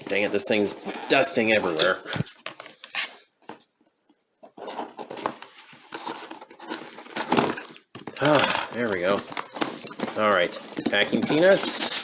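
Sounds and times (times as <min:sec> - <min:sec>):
packaging rustling and crinkling: 0:04.6 - 0:12.0.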